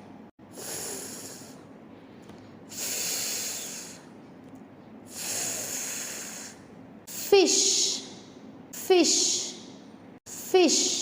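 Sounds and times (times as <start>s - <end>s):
woman making fff hiss: 0.5s - 1.6s, 2.7s - 4.0s, 5.1s - 8.1s.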